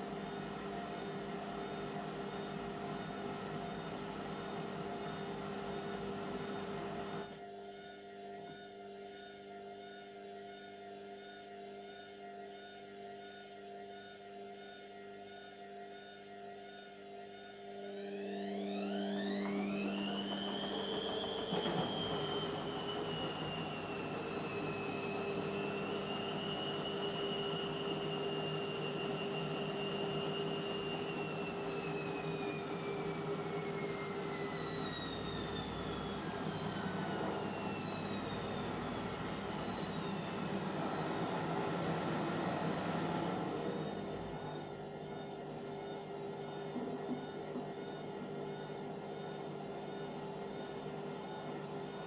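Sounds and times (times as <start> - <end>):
washing machine spinning: 17.9 - 47.2.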